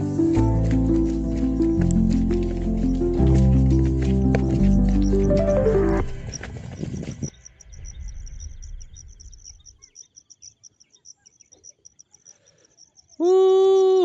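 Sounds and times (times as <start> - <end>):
insect chirping: 6.1 - 14.0.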